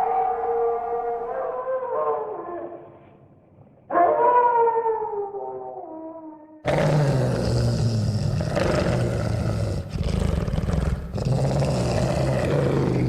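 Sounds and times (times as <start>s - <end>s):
deep rough monster growl: 6.7s - 13.0s.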